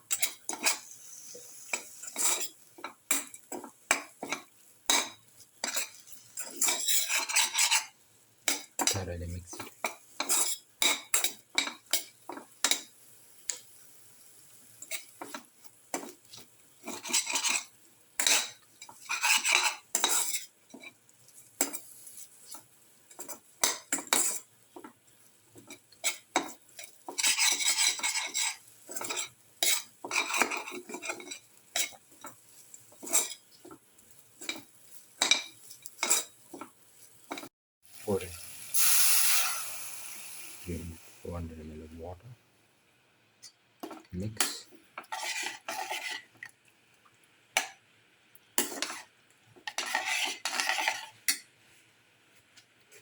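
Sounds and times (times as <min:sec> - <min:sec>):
utensil scraping a pan: 0:00.1 - 0:12.9, 0:14.8 - 0:25.0, 0:25.6 - 0:37.5, 0:44.4 - 0:46.4, 0:48.6 - 0:51.4.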